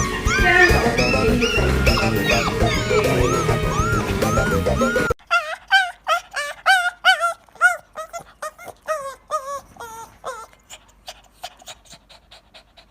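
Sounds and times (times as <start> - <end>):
dog yelping: 0.0 - 12.2.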